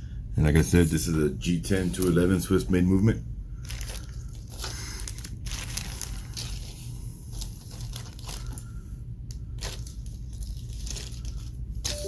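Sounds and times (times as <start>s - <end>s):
steady low hum: 0.0s - 12.0s
plastic crinkling: 3.6s - 12.0s.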